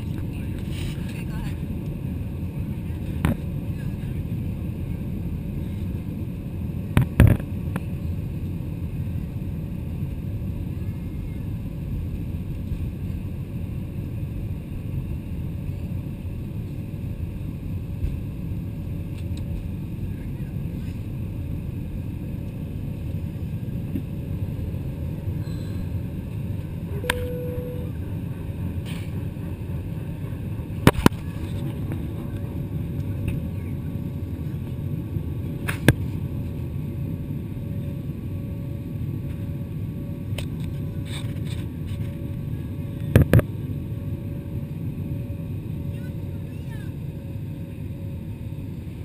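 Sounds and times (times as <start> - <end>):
airliner rumble during takeoff: 0.0 - 49.0.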